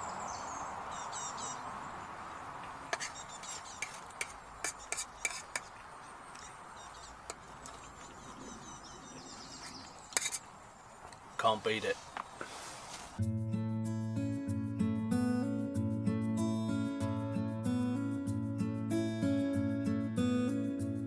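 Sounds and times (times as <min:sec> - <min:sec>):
faint bird chirps: 0:02.6 - 0:03.9, 0:04.6 - 0:10.2
background hiss: 0:09.5 - 0:13.2.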